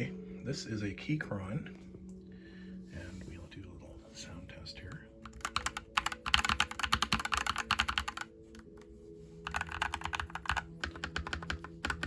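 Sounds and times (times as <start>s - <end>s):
mechanical keyboard typing: 5.2s - 8.6s, 9.4s - 12.0s.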